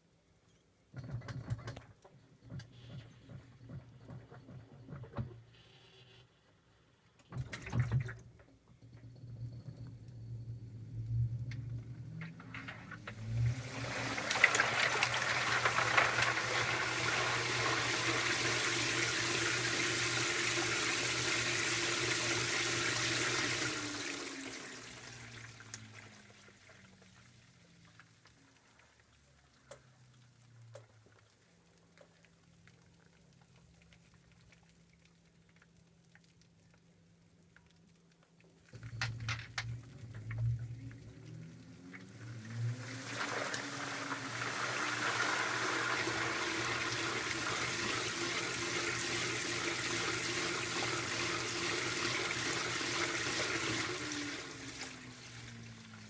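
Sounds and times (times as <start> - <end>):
washing machine agitating with clunks: 0.9 - 5.5, 7.2 - 28.2, 42.0 - 56.0
water rushing in washing machine: 1.0 - 5.3, 7.3 - 10.1, 11.9 - 31.0, 39.8 - 56.0
low motor hum: 8.7 - 16.4, 38.8 - 45.4.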